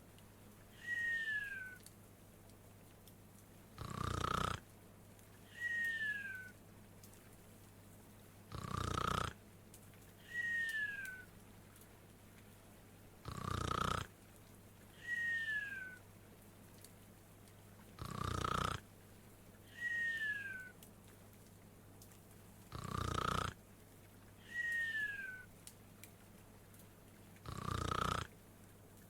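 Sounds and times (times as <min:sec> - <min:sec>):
person snoring with whistle: 0:08.6 - 0:09.3, 0:13.3 - 0:14.1, 0:18.0 - 0:18.8, 0:22.8 - 0:23.6, 0:27.5 - 0:28.3.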